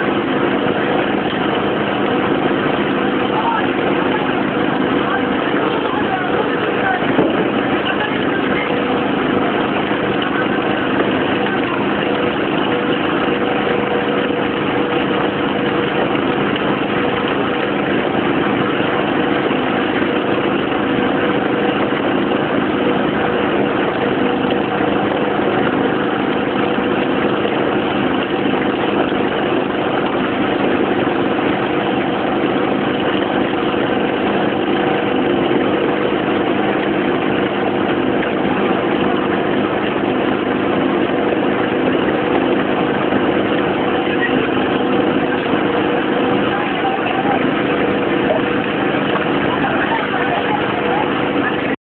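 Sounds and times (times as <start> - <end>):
engine humming steadily: 0.0 - 51.8.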